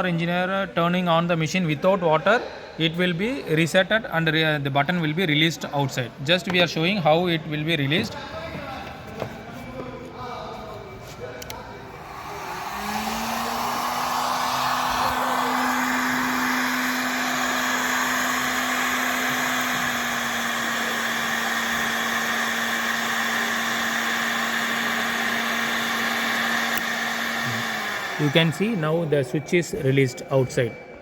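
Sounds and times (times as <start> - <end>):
hot-air blower motor hum: 11.4 - 29.7.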